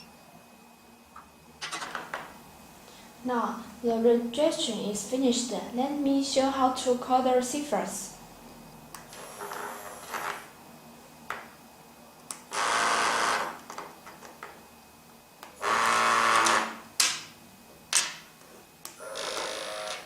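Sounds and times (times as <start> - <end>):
pager buzzing: 12.5 - 13.5, 15.6 - 16.8.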